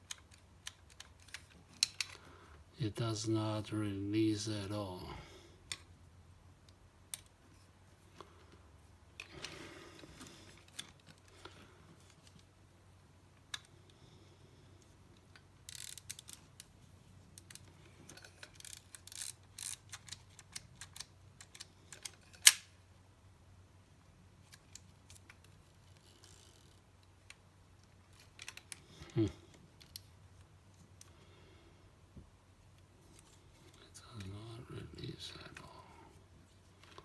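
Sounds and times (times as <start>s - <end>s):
camera mechanism clicks and rattles: 0.0s - 2.2s, 15.7s - 16.7s, 17.4s - 22.7s.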